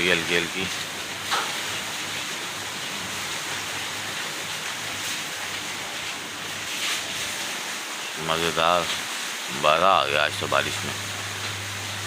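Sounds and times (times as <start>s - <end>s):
light rain falling: 0.0s - 12.0s.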